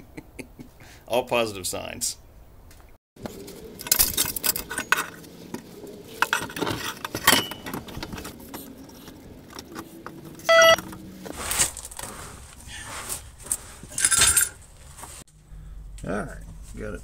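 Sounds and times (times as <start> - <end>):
metal exhaust clinking and knocking: 3.7 - 8.4.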